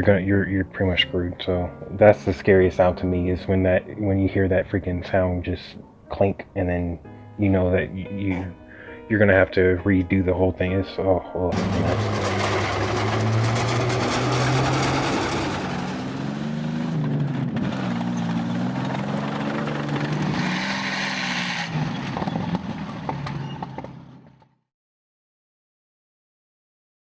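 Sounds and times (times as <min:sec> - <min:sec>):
heavy engine running: 0:11.5 - 0:24.5
mechanical clatter: 0:11.6 - 0:16.3.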